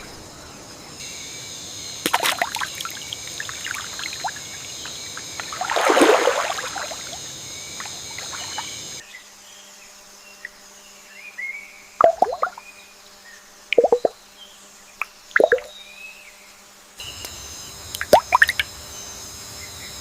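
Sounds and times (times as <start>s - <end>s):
high insect buzz: 0.0s - 20.0s
water splashing and trickling: 2.0s - 9.0s, 15.3s - 15.7s.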